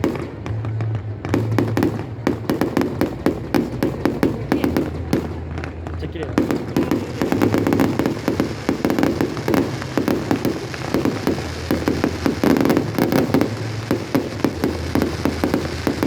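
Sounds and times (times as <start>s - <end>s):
fireworks bangs and crackles: 0.0s - 16.0s.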